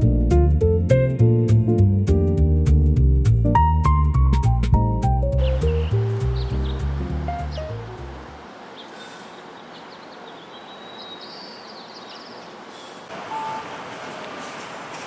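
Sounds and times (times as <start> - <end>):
traffic hiss: 5.4 - 15.0
brief beep: 13.3 - 13.8.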